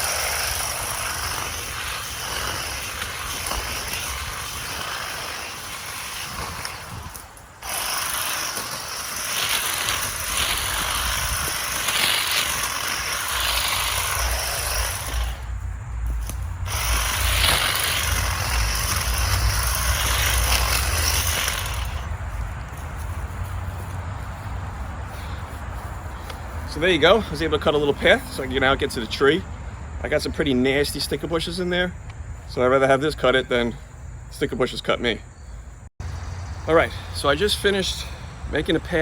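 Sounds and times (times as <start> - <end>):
hedge trimmer cutting brush: 0.0 - 24.1.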